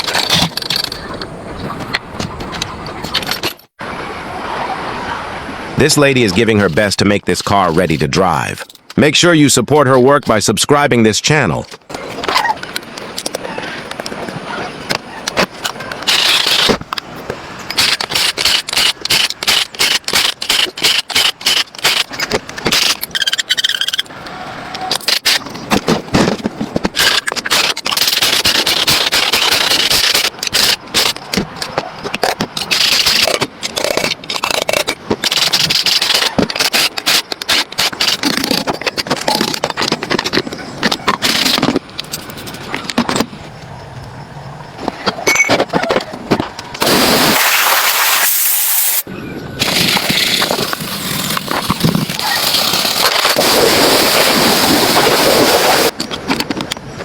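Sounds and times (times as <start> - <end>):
bursts of hiss: 46.8 - 55.9.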